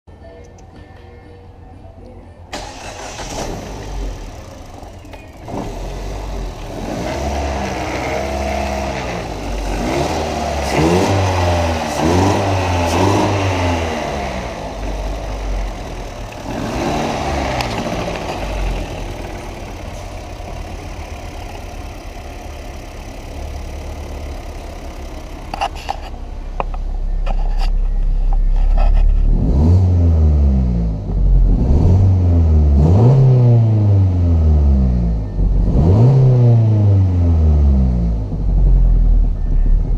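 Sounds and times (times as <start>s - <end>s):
car engine revving: 2.5s - 39.9s.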